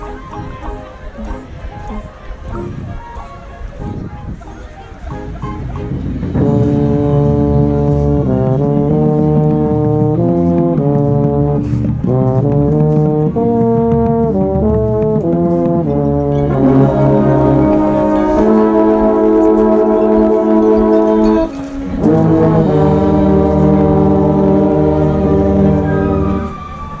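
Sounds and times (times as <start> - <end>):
marching band brass chords: 3.8 - 27.0
low bass: 5.2 - 26.5.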